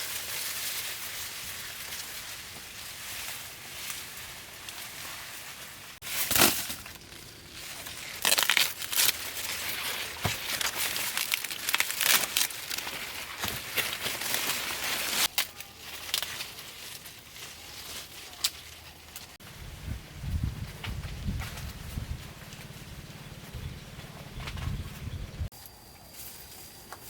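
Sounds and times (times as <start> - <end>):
crinkling and rustling: 0.0 - 19.4.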